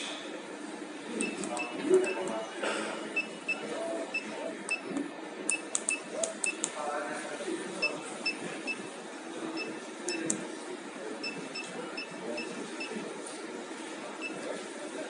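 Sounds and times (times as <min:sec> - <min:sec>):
keypad beeps: 0:01.2 - 0:02.5, 0:03.2 - 0:06.7, 0:09.6 - 0:10.4, 0:11.2 - 0:13.0.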